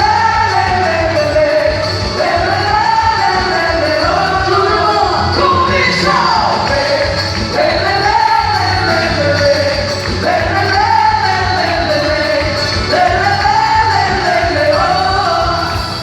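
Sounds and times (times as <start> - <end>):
music with singing over a steady beat: 0.0 - 16.0.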